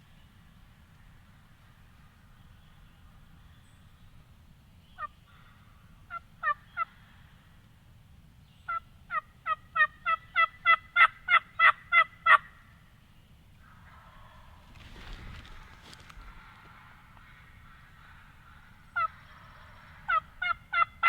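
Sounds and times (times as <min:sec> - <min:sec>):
turkey yelping: 0:08.7 - 0:12.6, 0:15.5 - 0:21.0.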